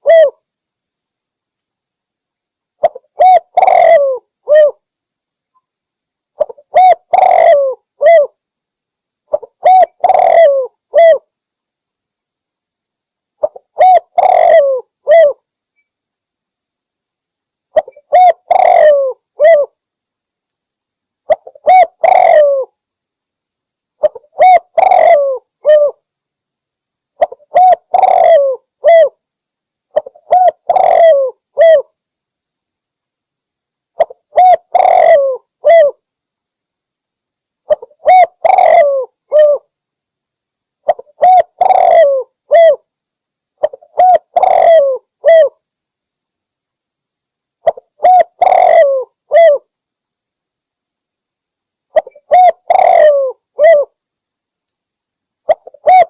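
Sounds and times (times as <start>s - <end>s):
dove cooing: 0.0s - 0.4s, 2.8s - 4.8s, 6.4s - 8.4s, 9.3s - 11.2s, 13.4s - 15.4s, 17.8s - 19.8s, 21.3s - 22.7s, 24.0s - 26.0s, 27.2s - 29.2s, 29.9s - 31.9s, 34.0s - 36.0s, 37.7s - 39.7s, 40.9s - 42.8s, 43.6s - 45.6s, 47.6s - 49.7s, 52.0s - 54.0s, 55.5s - 56.0s.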